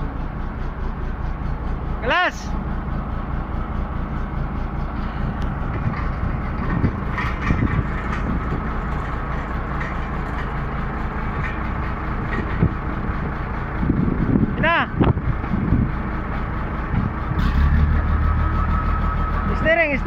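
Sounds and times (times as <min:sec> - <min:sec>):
bulldozer diesel engine running: 0:00.0 - 0:20.0
short metal knocks: 0:05.6 - 0:12.9.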